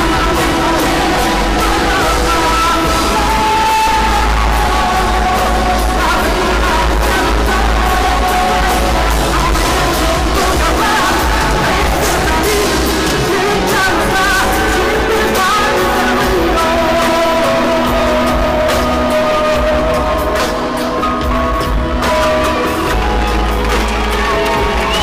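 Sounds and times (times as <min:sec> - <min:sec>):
pop-rock song: 0:00.0 - 0:25.0
singer holding long notes: 0:00.0 - 0:25.0.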